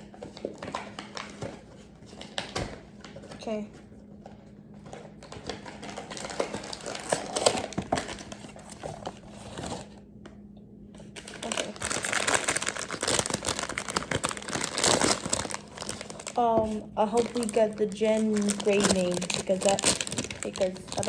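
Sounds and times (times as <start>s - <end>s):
packaging torn and crinkled: 5.2s - 9.9s, 11.0s - 21.0s.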